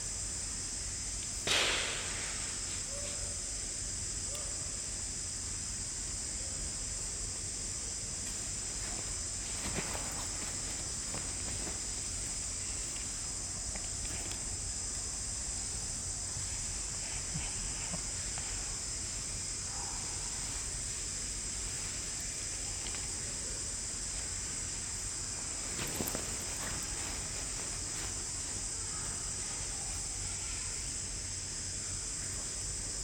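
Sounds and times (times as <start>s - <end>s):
insect chorus droning: 0.0s - 33.0s
light rustles and clicks: 8.2s - 15.0s, 21.5s - 30.1s.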